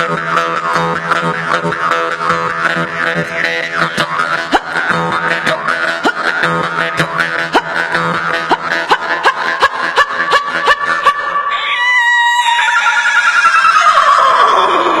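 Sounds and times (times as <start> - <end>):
rhythmic droning music: 0.0 - 11.5.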